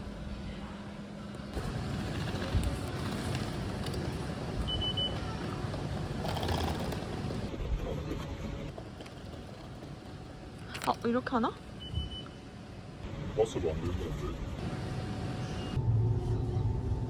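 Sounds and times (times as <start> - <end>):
vehicle rumbling in motion: 0.0 - 17.0.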